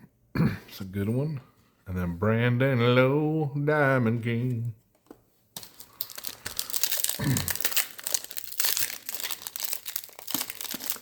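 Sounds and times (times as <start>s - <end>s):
foil wrappers crinkling: 5.6s - 11.0s.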